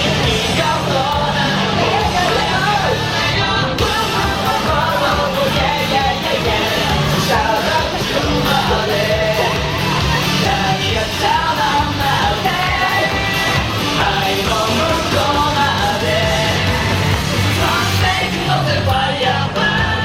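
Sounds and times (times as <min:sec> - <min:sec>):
rock band playing: 0:00.0 - 0:18.8
person singing: 0:00.0 - 0:20.0.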